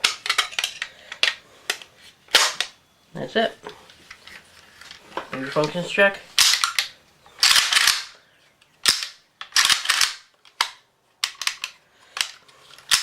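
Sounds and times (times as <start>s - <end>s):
rifle bolt racking and slamming: 4.9s - 8.2s, 8.8s - 13.0s.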